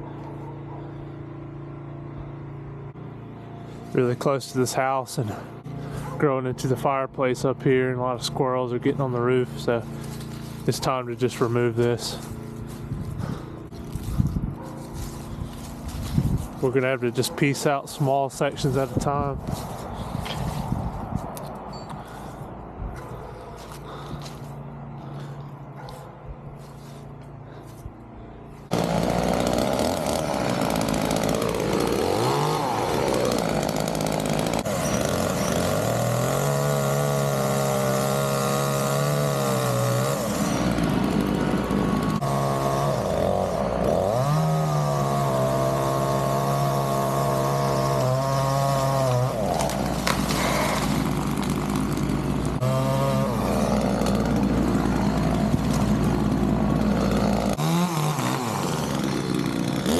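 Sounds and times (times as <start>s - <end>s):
chainsaw cutting tree: 8.8s - 17.7s, 18.3s - 21.0s, 21.9s - 22.4s, 23.0s - 26.0s, 28.6s - 59.9s.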